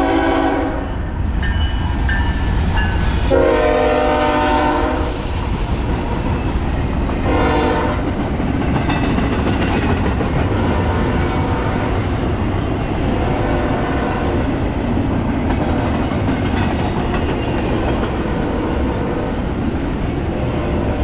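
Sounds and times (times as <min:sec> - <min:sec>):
train horn blasts: 0:00.0 - 0:01.0, 0:03.2 - 0:05.2, 0:07.2 - 0:08.1, 0:10.7 - 0:12.1, 0:13.2 - 0:14.3
train rumble and wheel clatter: 0:00.0 - 0:21.0.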